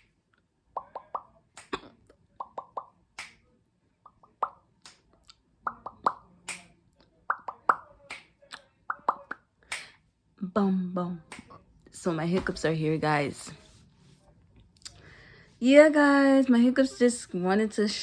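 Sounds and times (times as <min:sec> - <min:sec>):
person hiccuping: 0:01.7 - 0:02.0.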